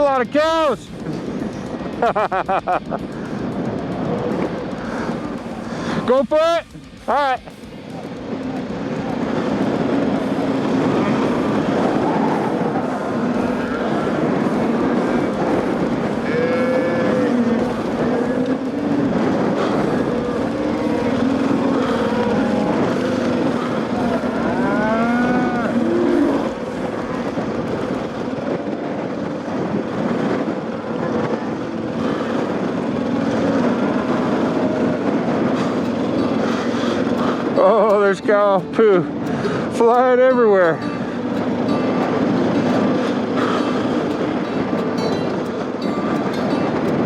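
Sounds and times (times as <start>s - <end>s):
motorcycle engine droning: 0.0s - 47.0s
cattle mooing: 10.2s - 28.0s.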